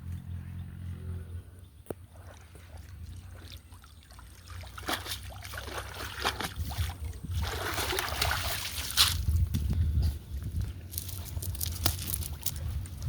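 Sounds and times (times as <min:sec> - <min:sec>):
water splashing and trickling: 0:01.8 - 0:13.0
sharp water splash: 0:02.1 - 0:09.4.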